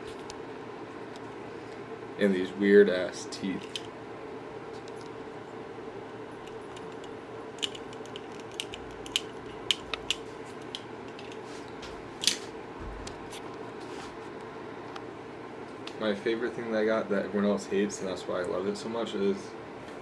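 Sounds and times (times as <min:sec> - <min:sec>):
steady room hum: 0:00.0 - 0:20.0
small objects clicking and tapping: 0:06.5 - 0:11.4.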